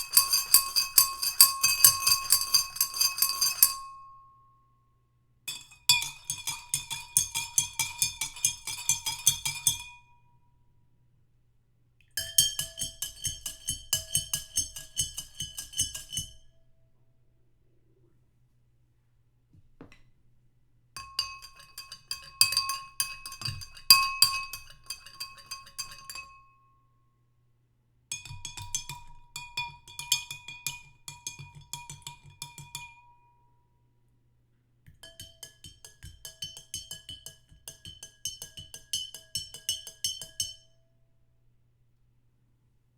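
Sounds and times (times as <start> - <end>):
spoon clinking in a glass: 0.0 - 4.0, 5.5 - 10.0, 12.2 - 16.4, 21.0 - 26.5, 28.1 - 33.0, 34.9 - 40.8.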